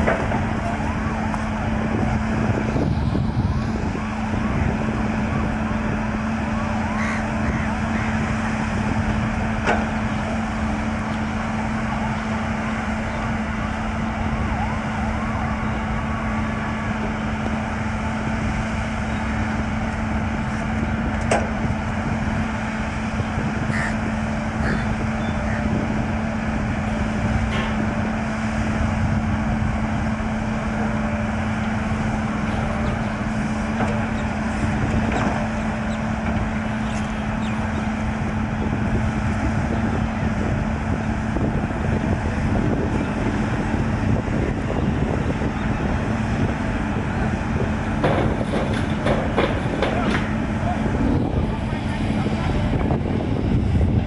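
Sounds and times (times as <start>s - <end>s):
diesel engine running: 0.0s - 54.0s
sharp knocks: 48.0s - 50.4s.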